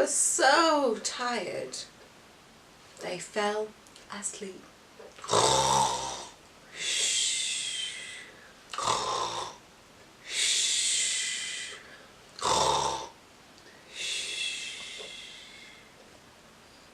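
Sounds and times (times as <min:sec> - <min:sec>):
person imitating snoring: 0:05.2 - 0:09.6, 0:10.3 - 0:11.8, 0:12.4 - 0:13.2, 0:14.0 - 0:15.7.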